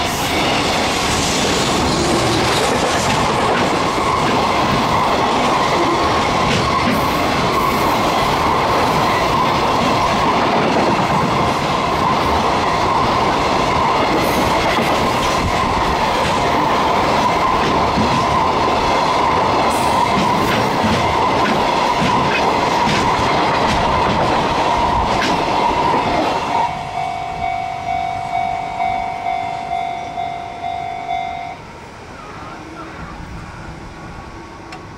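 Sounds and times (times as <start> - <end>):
freight train clattering on rails: 0.0 - 26.7
steady high tone: 24.2 - 34.7
level crossing warning bell: 24.5 - 31.9.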